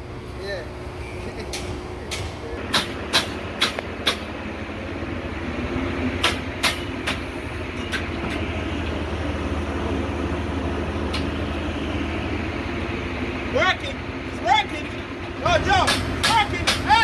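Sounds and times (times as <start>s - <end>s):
construction machinery rumble: 0.0s - 17.0s
sharp knocks: 1.6s - 4.3s, 6.2s - 7.3s, 15.8s - 17.0s.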